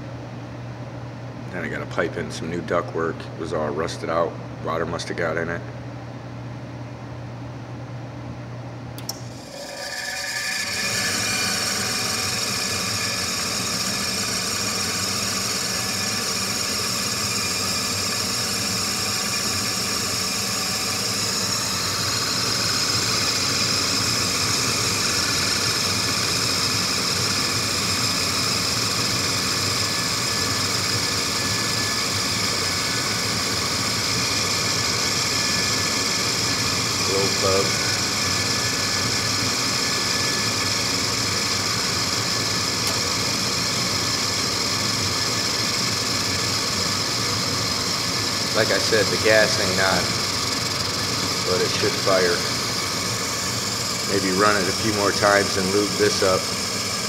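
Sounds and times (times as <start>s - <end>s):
inducer motor clicking on: 8.9s - 20.2s, 41.2s - 43.4s
motor running with squeak: 9.4s - 57.0s.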